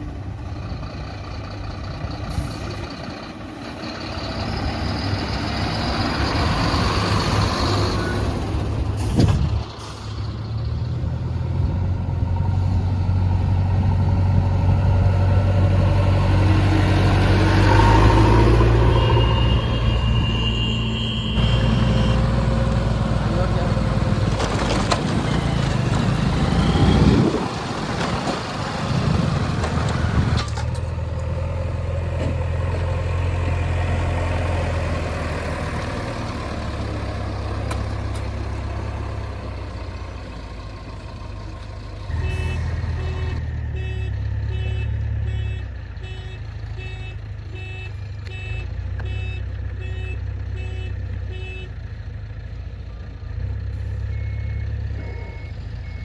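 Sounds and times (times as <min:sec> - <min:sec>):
diesel engines running: 0:00.0 - 0:56.0
reversing alarm beeping: 0:17.8 - 0:22.6, 0:42.1 - 0:45.7, 0:53.9 - 0:56.0.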